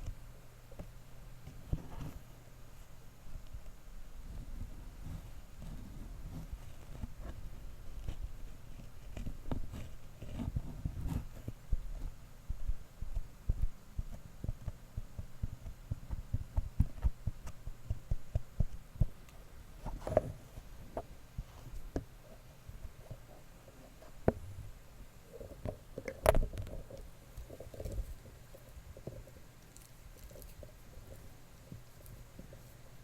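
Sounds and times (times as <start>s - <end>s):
microphone handling taps and thumps: 4.3s - 19.2s, 24.0s - 24.7s.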